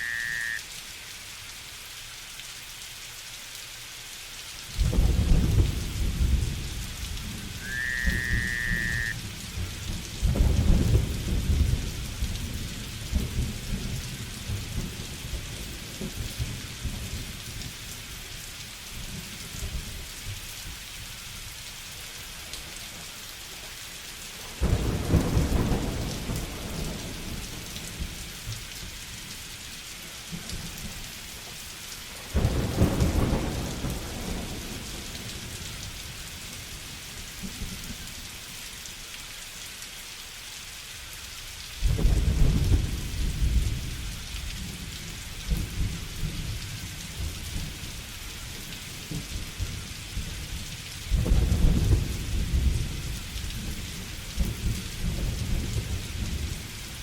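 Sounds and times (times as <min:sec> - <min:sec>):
rain hissing: 0:00.0 - 0:57.0
rising whistle: 0:07.6 - 0:09.2.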